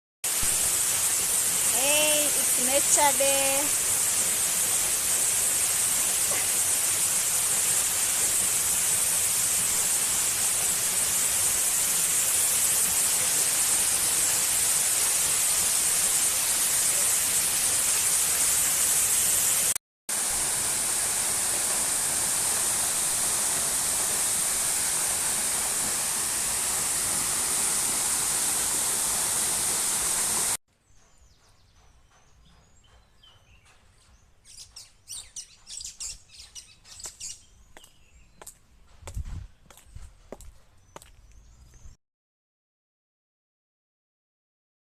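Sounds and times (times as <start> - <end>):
rushing water: 0.3 - 30.6.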